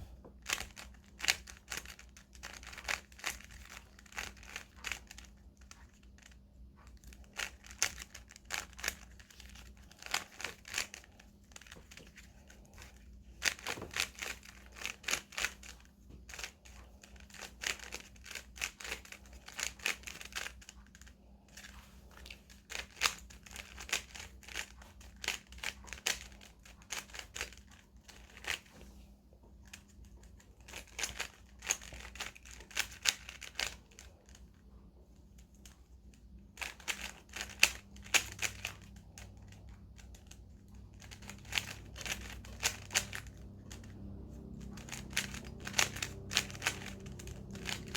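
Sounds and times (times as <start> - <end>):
plastic cube layers clicking: 40.9 - 43.9.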